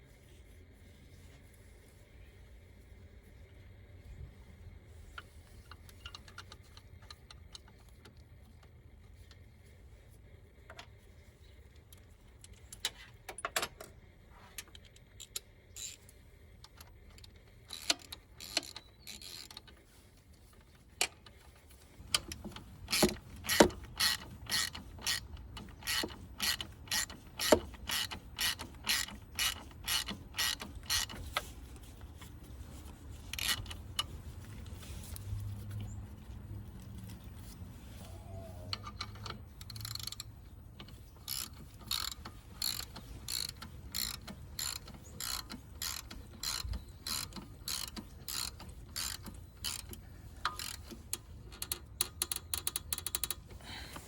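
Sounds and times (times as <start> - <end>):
ratchet wrench clicking: 15.2 - 16.1, 16.7 - 19.7, 22.1 - 31.5, 33.3 - 34.2, 38.7 - 53.5.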